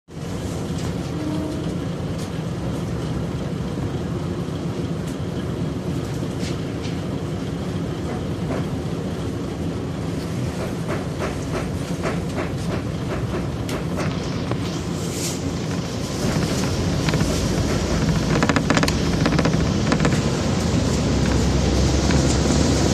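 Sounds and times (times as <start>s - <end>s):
diesel railcar engine rumble: 0.1s - 22.9s
wheels clicking over rail joints: 16.1s - 22.9s.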